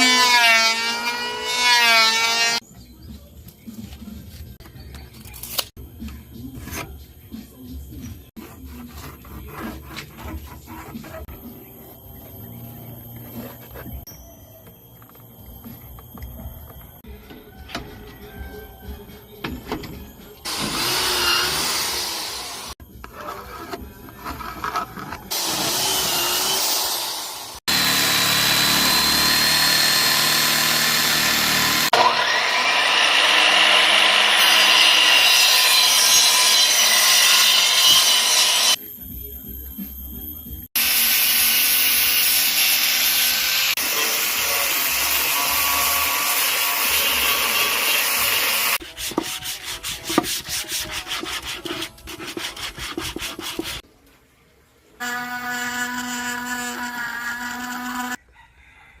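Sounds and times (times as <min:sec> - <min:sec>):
power tools cutting wood: 0:00.0 - 0:02.6, 0:20.4 - 0:38.8, 0:40.8 - 0:49.0, 0:55.0 - 0:58.2.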